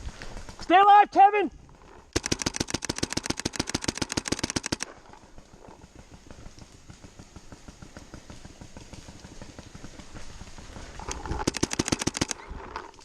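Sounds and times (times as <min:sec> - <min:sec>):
distant paintball shots popping: 0:02.2 - 0:04.9, 0:11.2 - 0:12.5
paintball markers firing: 0:02.2 - 0:04.9, 0:11.2 - 0:12.4.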